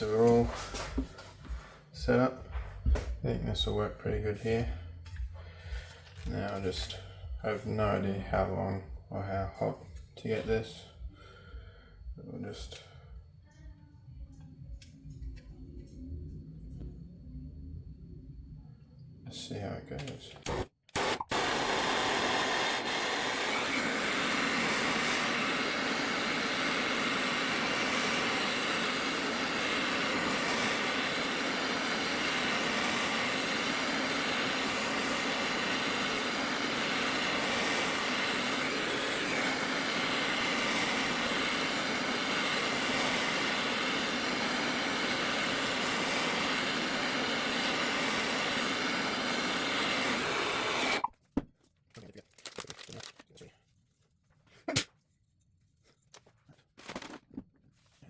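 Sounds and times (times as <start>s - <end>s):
gas torch hissing: 0.0s - 13.3s, 20.4s - 51.1s.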